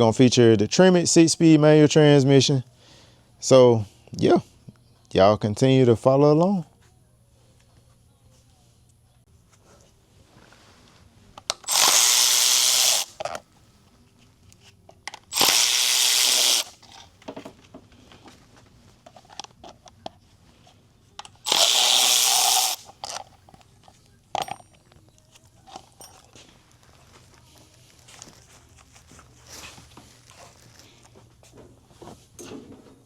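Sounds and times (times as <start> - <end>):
power tool running: 11.6 - 13.1, 15.3 - 16.8, 21.4 - 22.9
handling knocks and clicks: 22.9 - 26.6.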